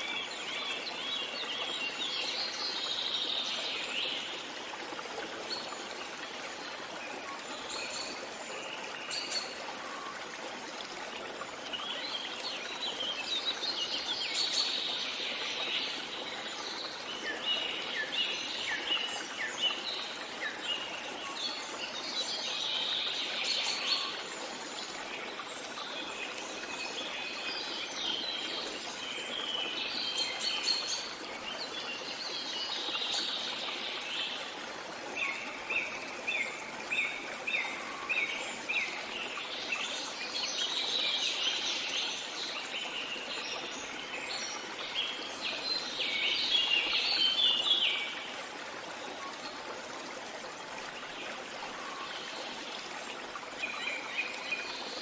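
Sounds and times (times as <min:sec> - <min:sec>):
running water: 0:00.0 - 0:55.0.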